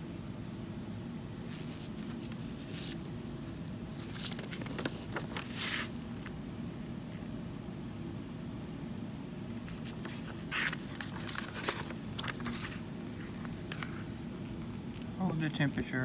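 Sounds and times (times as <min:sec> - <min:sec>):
steady low hum: 0:00.0 - 0:16.0
rustling and scraping handling: 0:01.2 - 0:07.3, 0:09.6 - 0:15.2.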